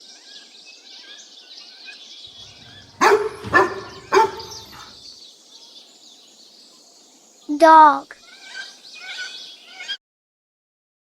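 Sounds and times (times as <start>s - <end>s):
faint birds chirping: 0.0s - 10.0s
dog barking: 2.4s - 5.0s.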